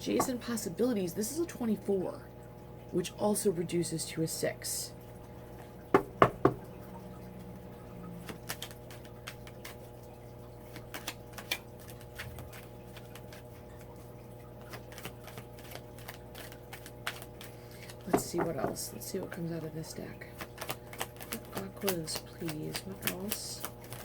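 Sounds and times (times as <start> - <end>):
cards shuffling and rustling: 8.2 - 10.0, 10.6 - 13.9, 14.6 - 19.5, 20.2 - 24.0.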